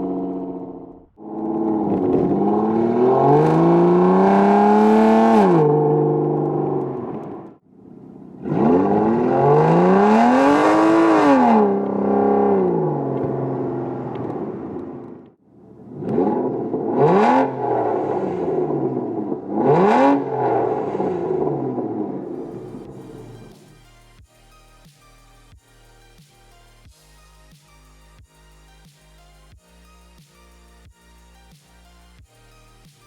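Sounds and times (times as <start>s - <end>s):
car exhaust revving: 0.0s - 23.6s.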